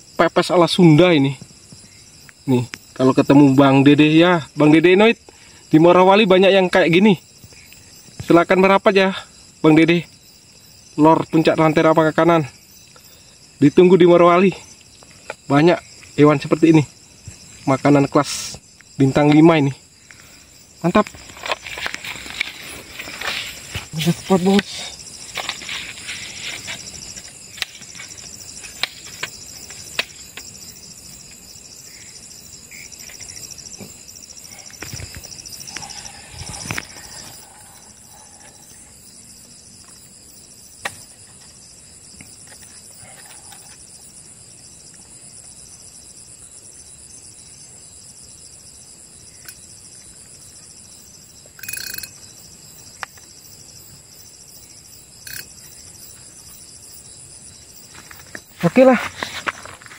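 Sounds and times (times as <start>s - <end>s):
crickets trilling: 0.0s - 59.9s.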